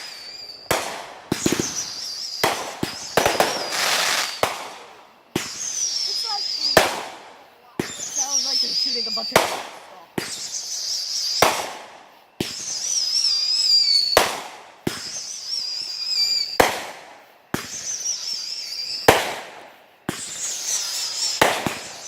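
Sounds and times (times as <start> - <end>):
fireworks bangs echoing: 0.0 - 22.0
high wavering whistle: 3.0 - 4.4, 5.5 - 6.9, 7.9 - 9.4, 10.2 - 11.6, 12.5 - 14.2, 15.0 - 16.6, 17.7 - 19.1.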